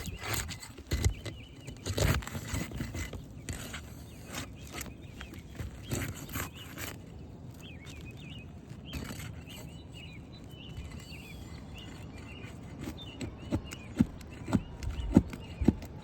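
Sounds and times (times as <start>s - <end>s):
small birds chirping: 0.0s - 16.0s
knocks on roof shingles: 12.8s - 16.0s.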